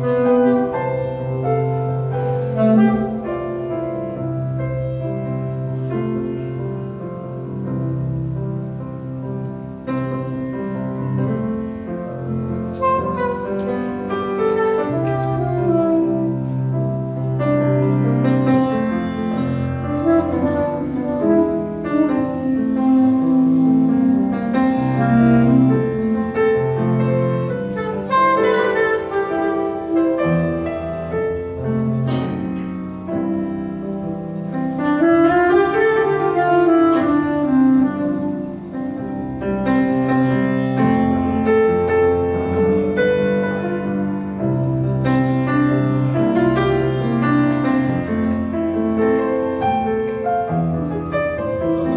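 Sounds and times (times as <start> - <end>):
saxophone playing: 0.0 - 4.1, 12.6 - 17.0, 19.7 - 31.6, 34.6 - 39.4
piano accompaniment: 0.0 - 51.9.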